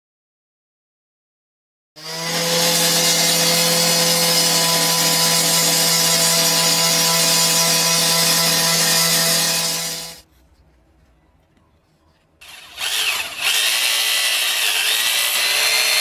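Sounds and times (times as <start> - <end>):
power tool cutting concrete: 2.0 - 10.2, 12.4 - 16.0.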